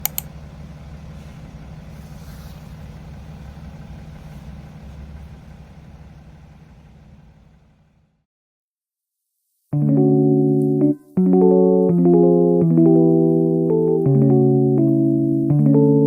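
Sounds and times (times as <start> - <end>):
sharp clicks: 0.0 - 0.4
low engine-like rumble: 0.0 - 8.3.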